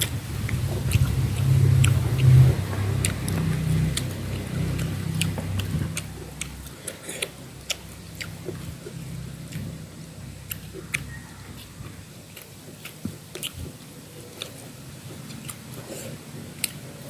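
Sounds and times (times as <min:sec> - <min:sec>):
chewing mouth clicks and smacks: 0:00.0 - 0:09.7, 0:10.4 - 0:16.8
low rumble: 0:00.0 - 0:12.2.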